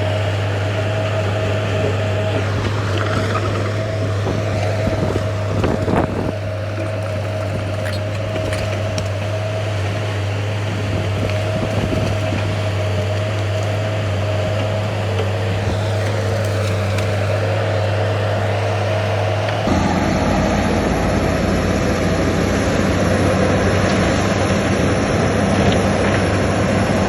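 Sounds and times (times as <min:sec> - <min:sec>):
diesel machinery engine droning: 0:00.0 - 0:27.0
engine whine: 0:00.0 - 0:27.0.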